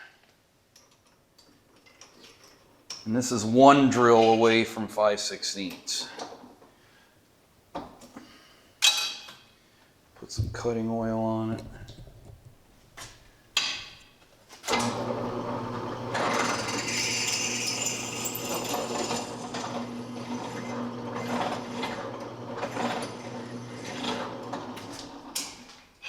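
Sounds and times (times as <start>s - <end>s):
drill press running: 14.7s - 25.3s.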